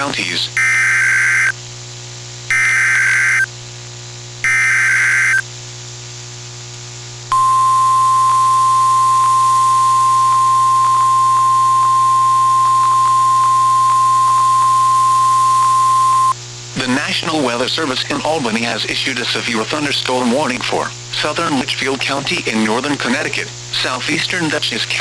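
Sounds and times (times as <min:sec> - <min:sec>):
steady warning alarm tone: 0:00.6 - 0:01.5, 0:02.5 - 0:03.5, 0:04.4 - 0:05.4, 0:07.3 - 0:16.4
harsh digital data screech: 0:02.5 - 0:03.5, 0:04.5 - 0:05.4.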